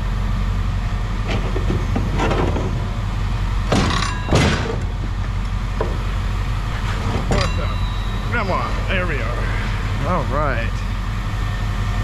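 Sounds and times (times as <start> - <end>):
low mechanical hum: 0.0 - 12.0
metal scraping and knocking: 1.2 - 2.9, 5.8 - 10.0.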